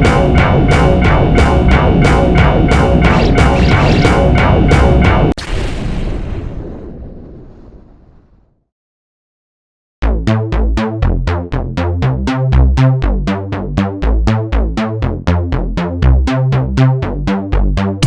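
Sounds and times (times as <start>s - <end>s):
electronic music with drum machine: 0.0s - 5.4s.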